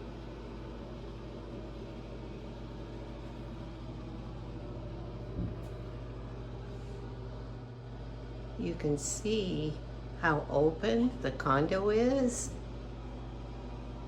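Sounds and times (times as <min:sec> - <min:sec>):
low electrical hum: 0:00.0 - 0:14.0
brief thump: 0:05.3 - 0:05.8.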